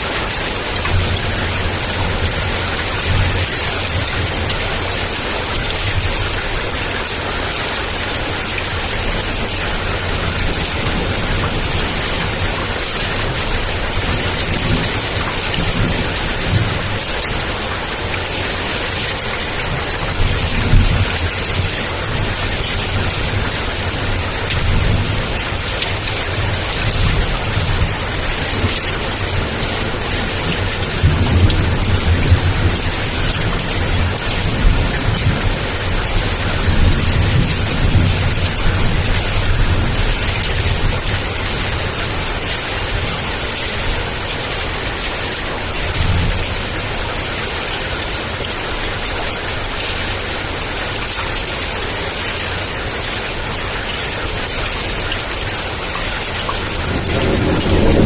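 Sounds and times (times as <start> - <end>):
heavy rain pouring: 0.0 - 58.0
low thunder rumbling: 8.8 - 44.8, 56.4 - 58.0.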